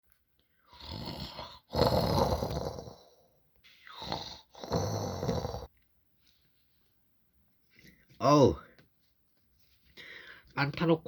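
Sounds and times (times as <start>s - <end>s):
loud snoring: 0.7s - 3.3s, 3.9s - 5.7s.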